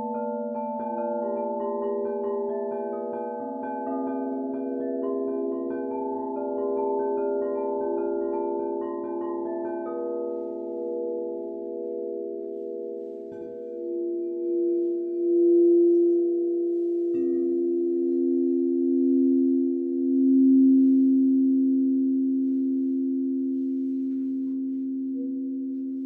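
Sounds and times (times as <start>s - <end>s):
crystal singing bowls ringing: 0.0s - 26.0s.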